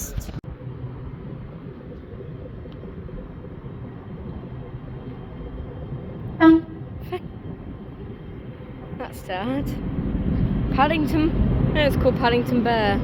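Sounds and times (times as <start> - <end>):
freight train rumbling: 6.2 - 13.0
train horn toot: 6.4 - 6.9.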